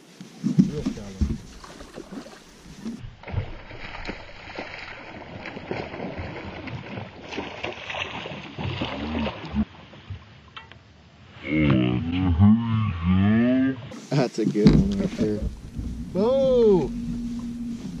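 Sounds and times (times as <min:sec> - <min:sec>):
water splashes: 0:00.3 - 0:10.6
steady hiss: 0:13.9 - 0:18.0.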